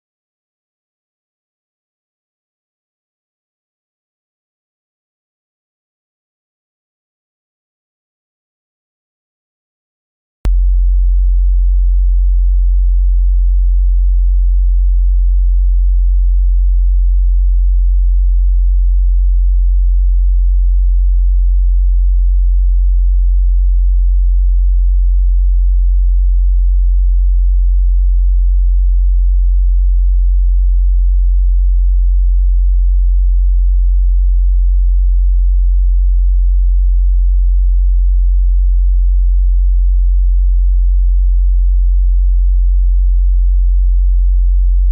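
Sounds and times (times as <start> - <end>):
low sine-wave test tone: 10.5 - 44.9.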